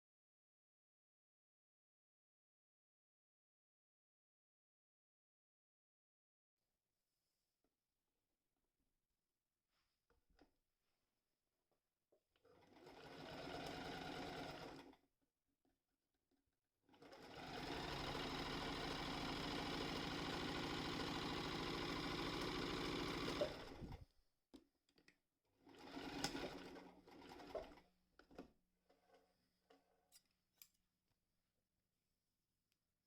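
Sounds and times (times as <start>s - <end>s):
sewing machine running: 12.6s - 15.0s, 17.0s - 24.0s, 25.6s - 27.8s.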